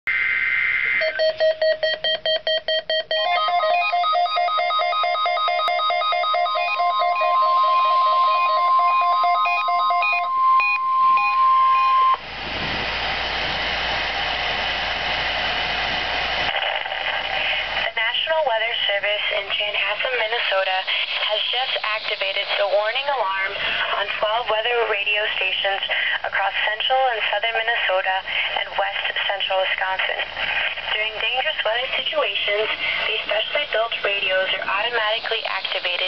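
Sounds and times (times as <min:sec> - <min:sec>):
radio hiss: 0:00.1 - 0:01.3, 0:12.2 - 0:36.0
data burst tones: 0:00.1 - 0:12.2, 0:19.6 - 0:23.1, 0:33.0 - 0:36.0
steady warning alarm tone: 0:00.8 - 0:12.2
rapid alert beeping: 0:01.0 - 0:12.2.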